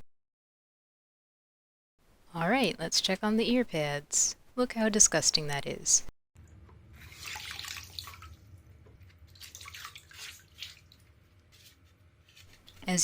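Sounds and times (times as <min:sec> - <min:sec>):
water sloshing and trickling: 0:06.4 - 0:12.9.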